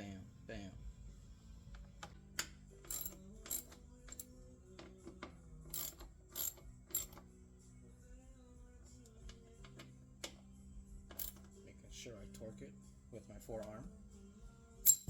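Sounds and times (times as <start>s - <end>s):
background music: 0.0s - 15.0s
socket ratchet clicking: 2.4s - 7.2s, 11.1s - 11.5s.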